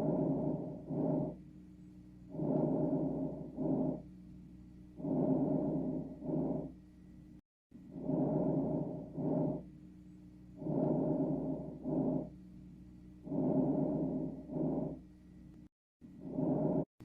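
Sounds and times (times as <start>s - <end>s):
lung breath sounds: 0.0s - 1.4s, 2.3s - 4.1s, 5.0s - 6.8s, 7.8s - 9.7s, 10.5s - 12.4s, 13.2s - 15.0s, 16.1s - 16.9s.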